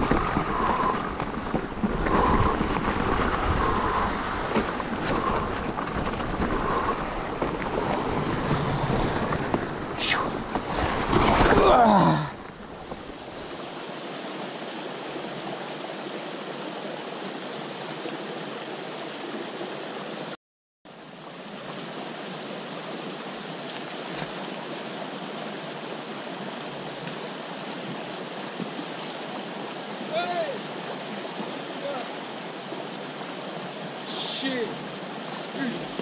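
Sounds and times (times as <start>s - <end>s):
stream water flowing: 0.0s - 36.0s.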